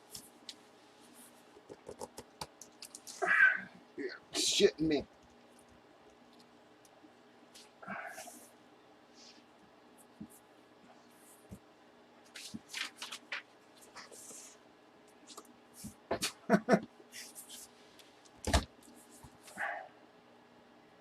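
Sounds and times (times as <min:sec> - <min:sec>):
wrapping crinkling and scraping: 0:02.6 - 0:03.2, 0:12.3 - 0:14.5.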